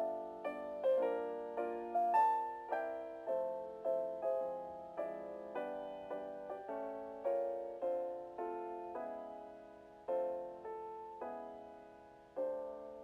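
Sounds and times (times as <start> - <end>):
gentle piano melody: 0.0 - 13.0.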